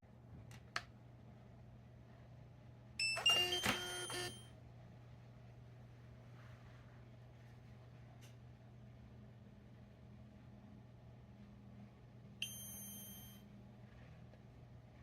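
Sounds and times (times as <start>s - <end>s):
faint low hum: 0.1s - 15.0s
bright chime tones: 12.4s - 13.4s.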